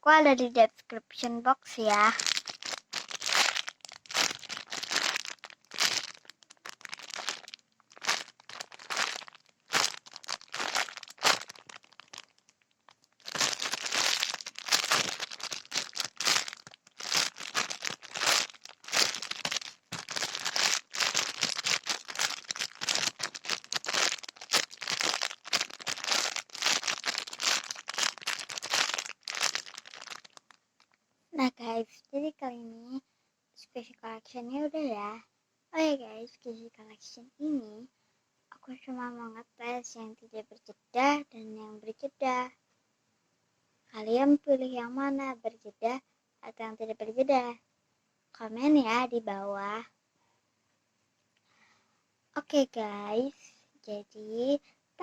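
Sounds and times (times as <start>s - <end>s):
squishy toys crinkling: 1.2s - 30.6s.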